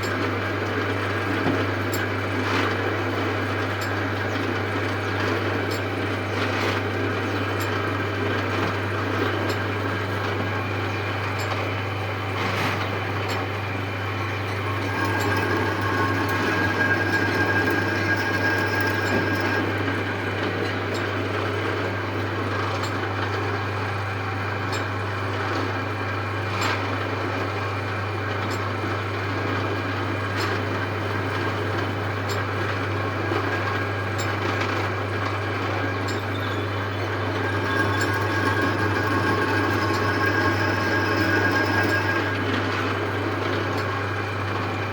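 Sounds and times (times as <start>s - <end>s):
lathe humming: 13.1s - 21.6s, 36.6s - 44.4s
thin high squeal: 14.3s - 20.3s, 36.3s - 43.0s.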